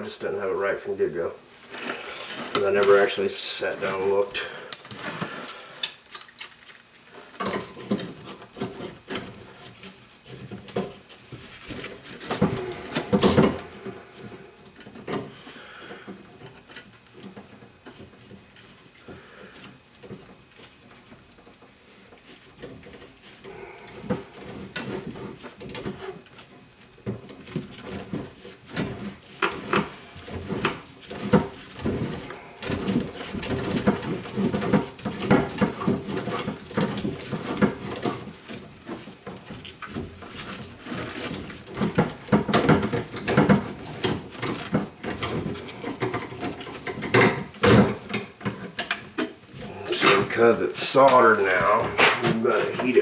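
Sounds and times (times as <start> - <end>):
tools and metal parts clattering: 4.7 - 5.3.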